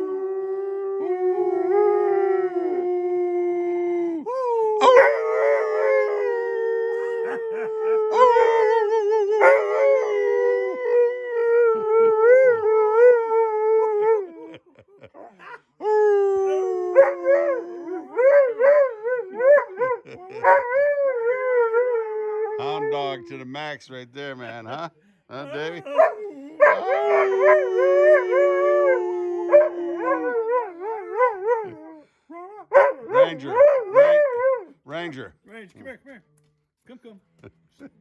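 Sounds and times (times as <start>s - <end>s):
dog howling: 0.0s - 23.2s, 25.6s - 34.7s.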